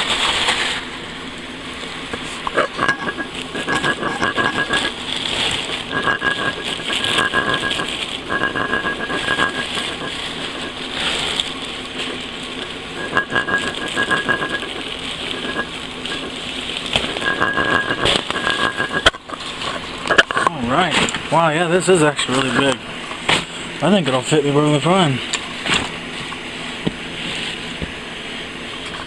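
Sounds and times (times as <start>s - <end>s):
packaging rustling and crinkling: 0.0s - 0.9s, 3.5s - 18.8s
rasping stretches: 2.1s - 21.2s.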